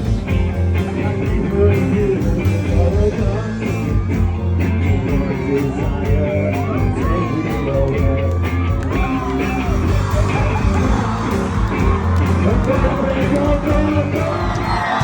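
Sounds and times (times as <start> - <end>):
bass line: 0.0 - 15.0
person singing: 0.7 - 15.0
drum beat: 5.1 - 15.0.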